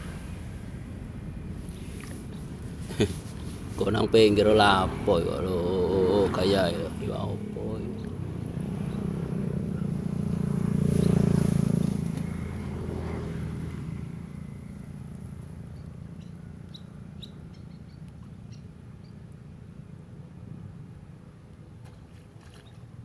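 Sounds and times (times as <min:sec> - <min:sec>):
engine passing by: 0:00.0 - 0:17.2
bird chirps: 0:15.7 - 0:19.2.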